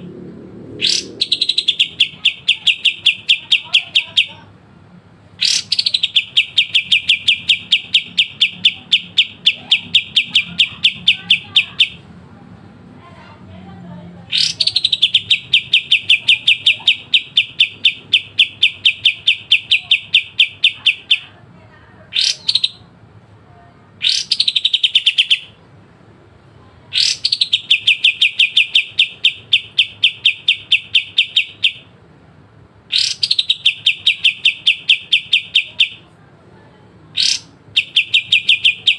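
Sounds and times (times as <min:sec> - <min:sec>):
songbird rattling trill: 0:00.8 - 0:04.4, 0:05.4 - 0:12.0, 0:14.3 - 0:21.3, 0:27.0 - 0:31.9, 0:32.9 - 0:36.0, 0:37.2 - 0:38.9.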